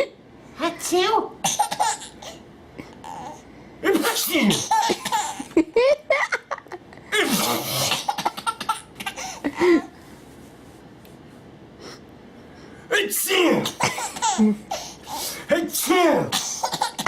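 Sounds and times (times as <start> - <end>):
fake sneezes: 3.8 - 4.9, 7.1 - 8.2, 12.9 - 14.1, 14.7 - 17.0
baby giggling: 4.6 - 6.5, 13.8 - 14.9.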